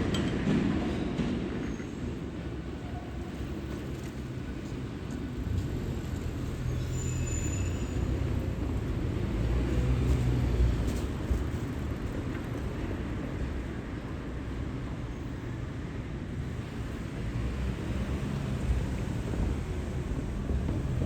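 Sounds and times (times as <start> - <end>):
brief high squeal: 6.7 - 8.1
vehicle passing rumble: 16.5 - 21.0.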